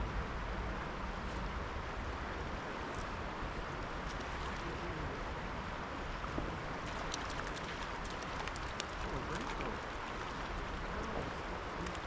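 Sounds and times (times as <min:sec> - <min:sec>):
river water flowing: 0:00.0 - 0:12.0.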